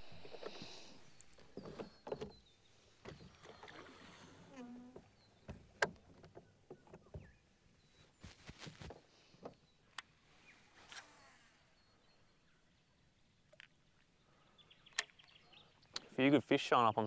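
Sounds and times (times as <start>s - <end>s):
knocks of gear in a boat: 0.2s - 3.6s, 4.8s - 7.4s.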